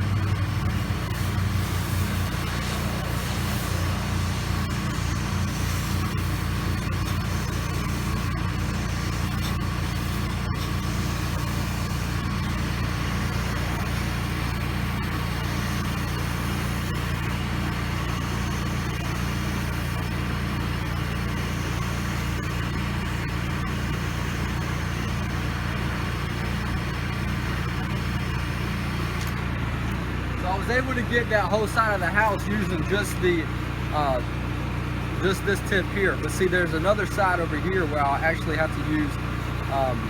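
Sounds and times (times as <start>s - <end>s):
pressure washer engine running: 0.0s - 40.0s
hiss of spray: 1.2s - 12.2s.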